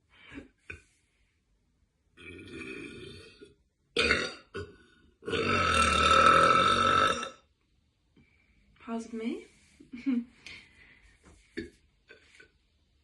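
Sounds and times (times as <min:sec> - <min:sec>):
woman burping: 0:02.2 - 0:07.4.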